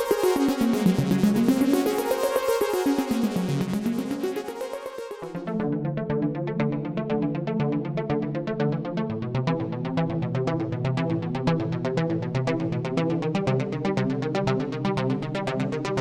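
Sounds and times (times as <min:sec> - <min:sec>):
synthesizer arpeggio: 0:00.0 - 0:05.8.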